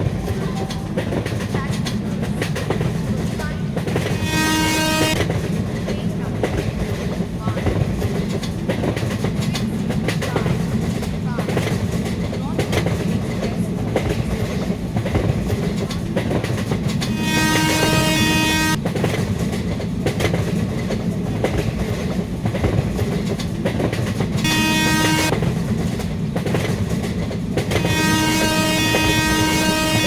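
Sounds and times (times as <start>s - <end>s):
train rumbling at speed: 0.0s - 30.0s
train horn blasts: 4.1s - 5.4s, 17.1s - 18.8s, 24.4s - 25.5s, 27.7s - 30.0s.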